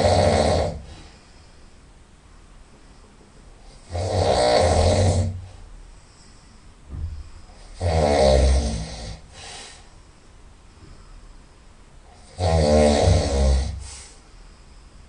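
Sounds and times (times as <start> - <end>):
person snoring loudly: 0.0 - 0.9, 3.7 - 5.5, 7.6 - 9.4, 12.2 - 14.0
soft breaths: 0.8 - 3.8, 5.3 - 7.8, 8.8 - 12.3, 13.6 - 15.0.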